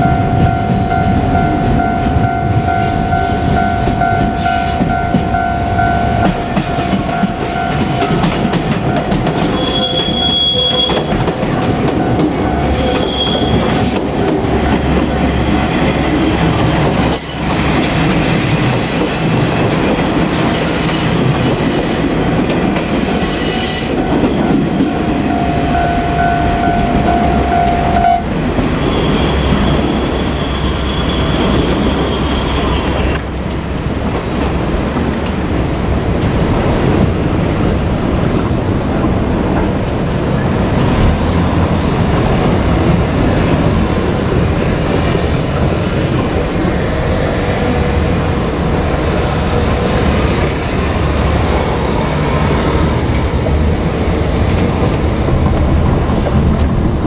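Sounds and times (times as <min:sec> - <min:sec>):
crossing alarm tone: 0:00.0 - 0:19.5, 0:23.2 - 0:33.4
train wheels clattering: 0:06.1 - 0:30.3, 0:31.2 - 0:57.0
wheel squeals: 0:06.7 - 0:14.1, 0:17.1 - 0:19.6, 0:28.8 - 0:33.2.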